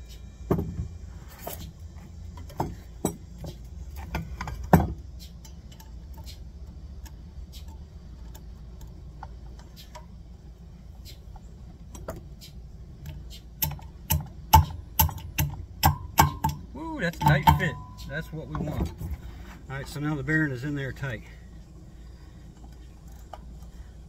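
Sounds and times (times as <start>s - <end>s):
metal parts knocking and clinking: 2.3s - 6.4s, 13.1s - 19.2s.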